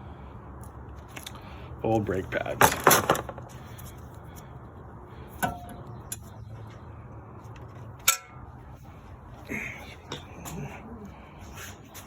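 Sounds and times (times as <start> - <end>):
low steady hum: 0.0 - 12.0
brake pads clinking: 7.5 - 8.5.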